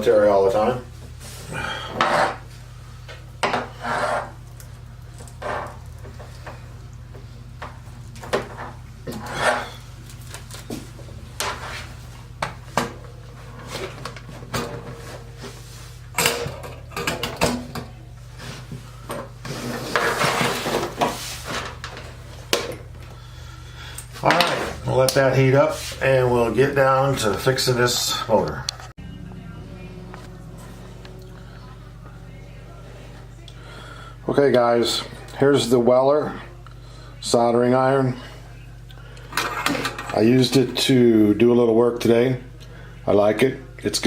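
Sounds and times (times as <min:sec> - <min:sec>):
steady low hum: 0:00.0 - 0:44.0
rubbing and rustling: 0:18.3 - 0:22.5.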